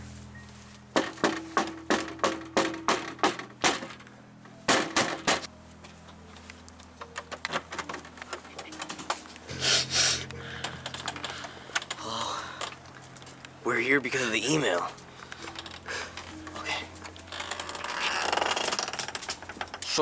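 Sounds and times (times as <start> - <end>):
knocking on a door: 1.0 - 3.9.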